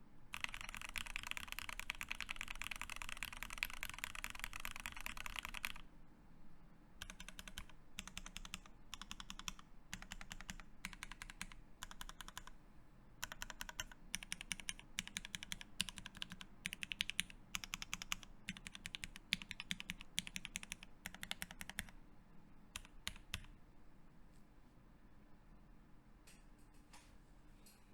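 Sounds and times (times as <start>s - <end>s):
typing on mechanical keyboard: 0.3s - 5.8s, 7.0s - 12.5s, 13.2s - 22.0s, 22.8s - 23.5s.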